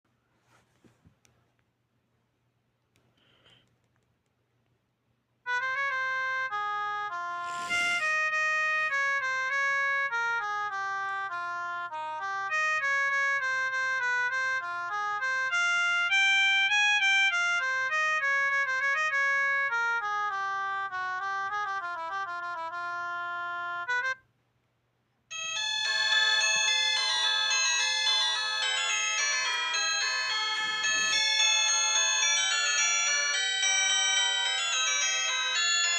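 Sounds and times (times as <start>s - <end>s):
bright busy ringtone: 25.3s - 35.9s
electronic ringtone melody: 25.3s - 35.9s.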